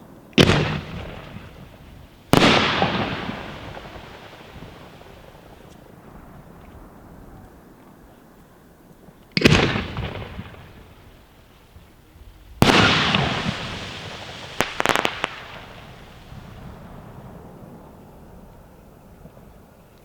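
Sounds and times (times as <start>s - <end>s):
fireworks booming bangs: 0.0s - 6.5s, 9.4s - 18.1s
rattle of sharp firework cracks: 0.4s - 5.9s, 9.4s - 11.6s, 12.5s - 16.8s.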